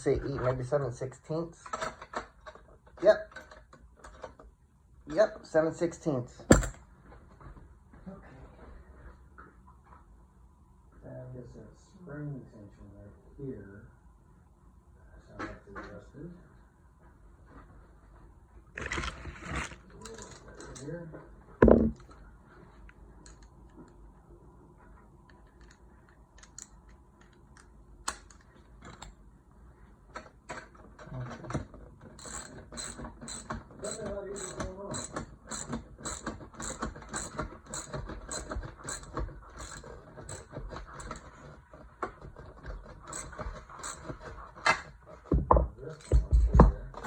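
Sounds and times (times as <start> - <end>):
metal tool knocks: 21.6 - 22.0
ratchet wrench clicking: 32.2 - 41.2.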